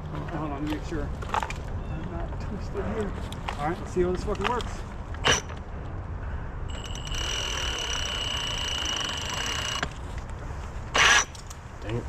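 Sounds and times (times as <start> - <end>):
cordless drill whining: 6.7 - 10.0, 11.0 - 11.4.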